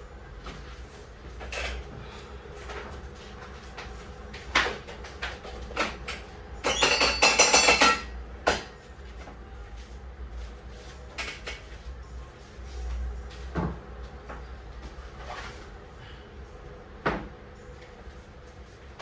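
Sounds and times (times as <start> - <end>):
clatter of metallic objects: 6.6 - 8.1.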